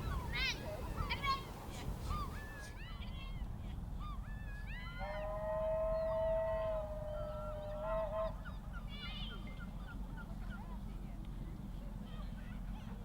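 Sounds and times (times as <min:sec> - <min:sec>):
birds calling: 0:00.0 - 0:02.8.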